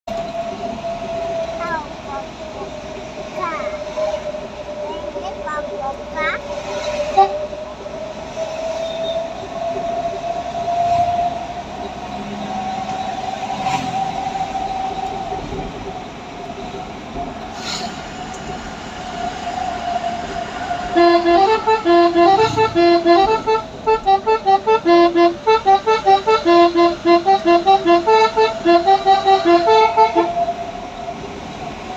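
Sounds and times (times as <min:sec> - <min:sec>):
truck horn playing a tune: 0:06.9 - 0:07.5, 0:20.8 - 0:30.6.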